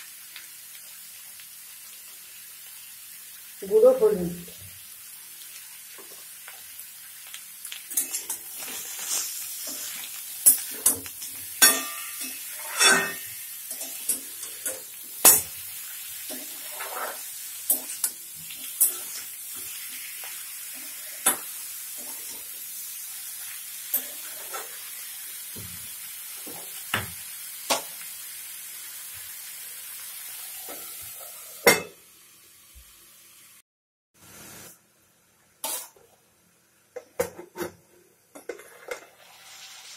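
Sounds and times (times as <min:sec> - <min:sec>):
vegetables sizzling in oil: 0:00.0 - 0:33.6, 0:34.2 - 0:37.2, 0:38.4 - 0:39.9
utensil scraping a pan: 0:08.0 - 0:14.7, 0:16.3 - 0:22.5, 0:23.9 - 0:24.8, 0:38.4 - 0:39.9.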